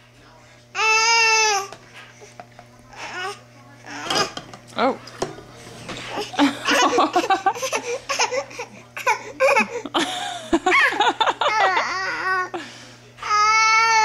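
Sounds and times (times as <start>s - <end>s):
baby laughing and babbling: 7.5s - 9.8s, 11.4s - 12.6s.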